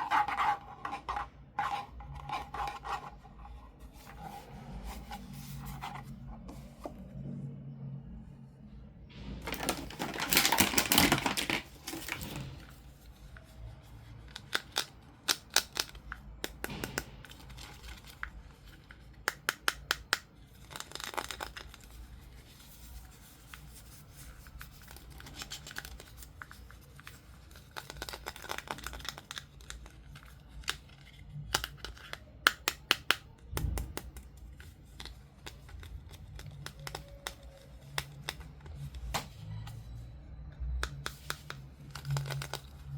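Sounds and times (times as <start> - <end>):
packaging tearing and crinkling: 9.4 - 12.8.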